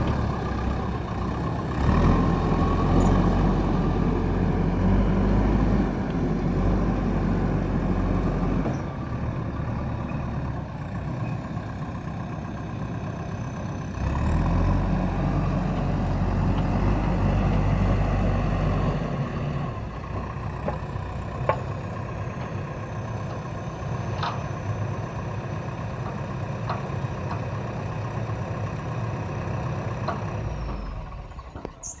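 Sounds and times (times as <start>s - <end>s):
backhoe diesel engine running: 0.0s - 32.0s.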